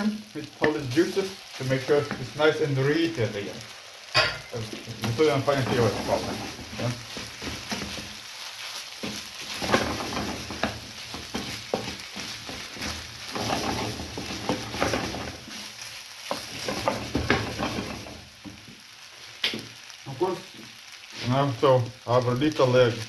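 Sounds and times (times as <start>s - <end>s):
rice sizzling in a pan: 0.0s - 23.0s
spatula scraping a pan: 0.5s - 18.6s.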